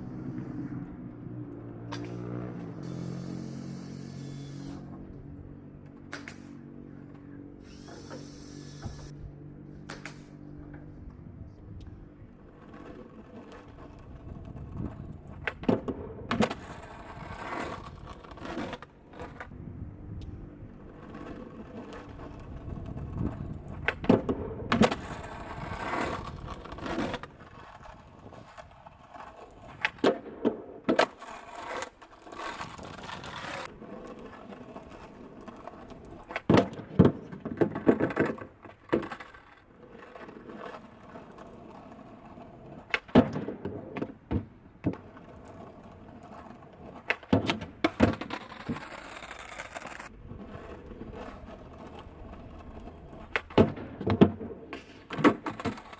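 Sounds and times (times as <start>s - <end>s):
skateboard wheels rolling: 0.0s - 55.9s
skateboard clacks and thumps: 12.5s - 19.6s, 20.9s - 55.9s.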